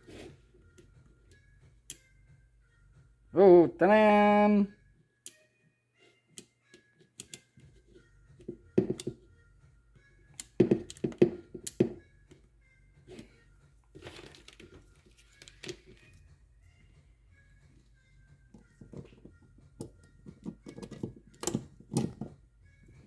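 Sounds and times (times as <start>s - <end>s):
plastic clicks and knocks: 18.8s - 22.4s.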